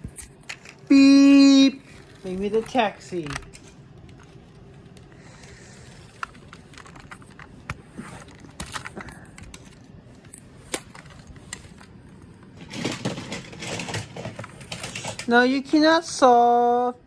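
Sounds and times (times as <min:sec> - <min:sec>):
toy cars rattling and rubbing: 0:00.3 - 0:16.3
toy cars clicking on hard surface: 0:12.6 - 0:15.7.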